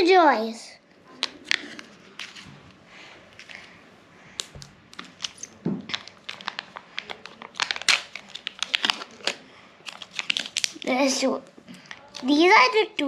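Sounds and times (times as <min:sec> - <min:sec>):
foil packaging crinkling: 0:04.4 - 0:11.0.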